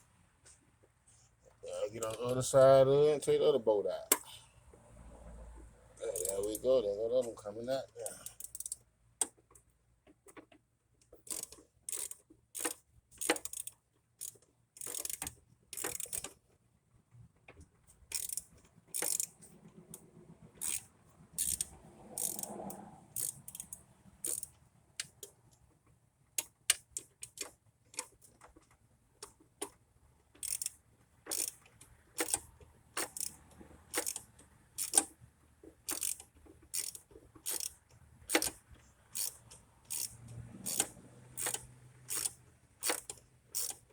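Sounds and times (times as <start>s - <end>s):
socket ratchet clicking: 6.1s - 6.6s, 8.0s - 9.4s, 11.2s - 16.4s, 18.1s - 19.4s, 20.6s - 22.5s, 23.1s - 25.1s, 30.4s - 35.2s, 35.9s - 43.9s.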